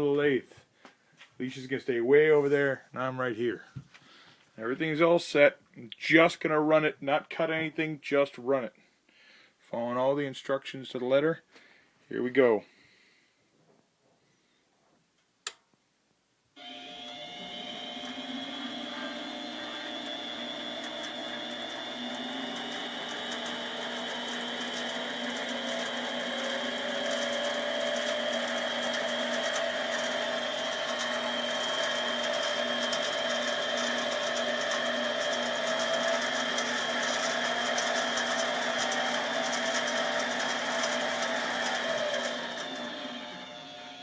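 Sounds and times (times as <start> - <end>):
lathe motor whine: 16.6 - 44.0.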